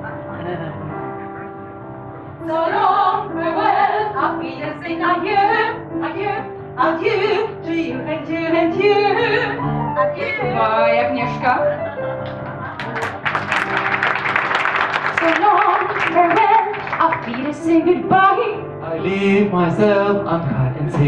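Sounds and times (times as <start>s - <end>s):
instrumental accompaniment: 0.0s - 21.0s
woman singing: 2.5s - 11.7s, 15.2s - 19.1s.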